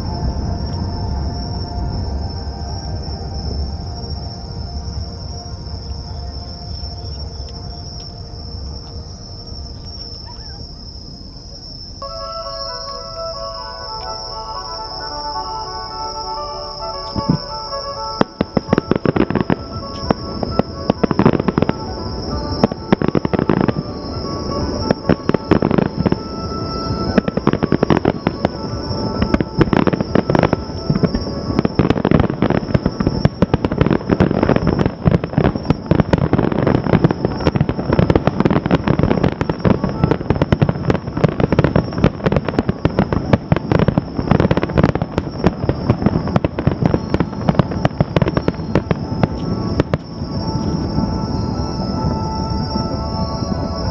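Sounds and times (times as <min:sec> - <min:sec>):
fireworks bursting: 0:00.0 - 0:53.9.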